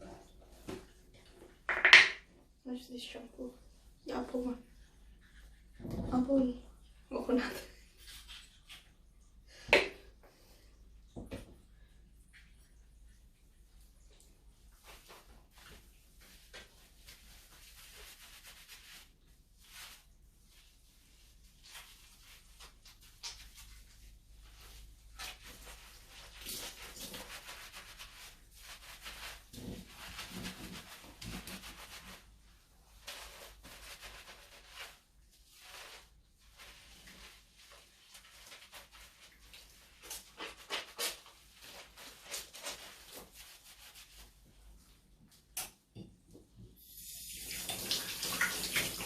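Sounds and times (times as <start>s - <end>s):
hands rubbing lather through hair: 14.6s - 44.9s.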